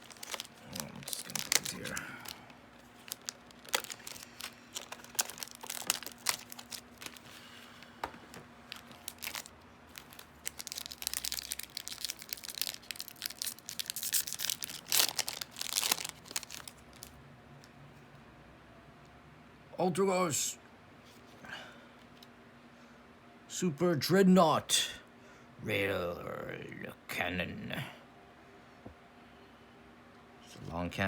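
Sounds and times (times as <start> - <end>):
wrapper crinkling and tearing: 0.0 - 7.6, 8.2 - 17.2.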